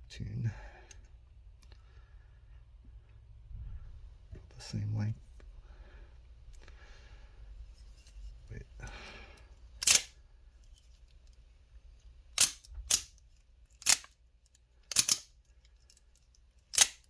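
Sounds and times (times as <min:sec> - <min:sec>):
knife blades snapping out: 0:09.8 - 0:10.1, 0:12.4 - 0:13.1, 0:13.8 - 0:14.1, 0:14.9 - 0:15.2, 0:16.8 - 0:17.0.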